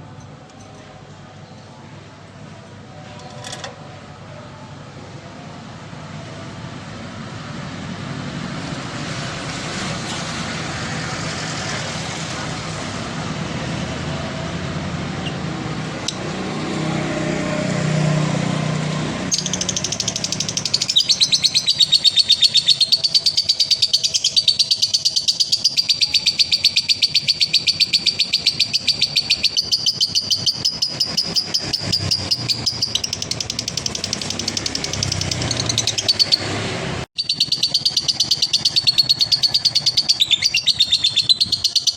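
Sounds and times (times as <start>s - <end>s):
lovebird chattering trill: 19.3s - 36.6s, 37.2s - 41.9s.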